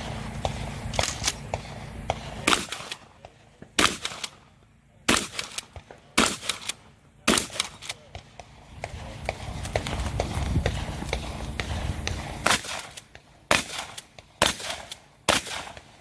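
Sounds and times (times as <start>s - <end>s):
shotgun shots: 0.0s - 16.0s
shotgun pump clacking: 0.9s - 1.6s, 5.1s - 8.2s.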